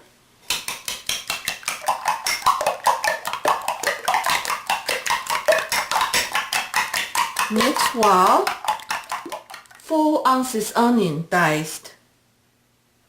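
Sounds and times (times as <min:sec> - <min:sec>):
utensil beating eggs in bowl: 0:00.5 - 0:10.6.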